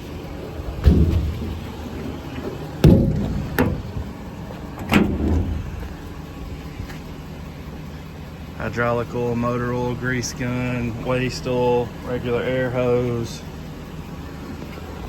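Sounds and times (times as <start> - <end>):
low hum: 0.0 - 15.0
metal compartment doors banging: 0.6 - 6.5
latch click: 2.8 - 4.1, 4.8 - 5.9.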